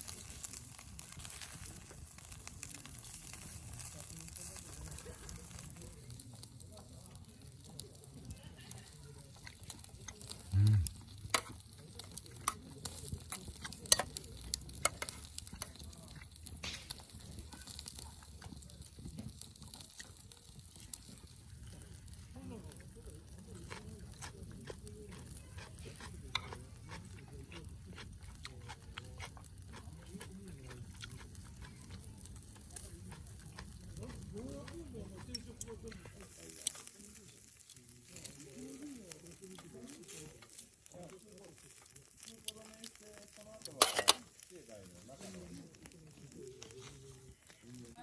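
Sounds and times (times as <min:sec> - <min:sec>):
food sizzling: 0:00.0 - 0:48.0
sharp fire snaps: 0:00.0 - 0:48.0
wood fire crackling: 0:00.0 - 0:48.0
sharp pops from fire: 0:09.2 - 0:22.1, 0:39.6 - 0:45.7
utensils stirring: 0:11.2 - 0:17.2, 0:43.7 - 0:44.3.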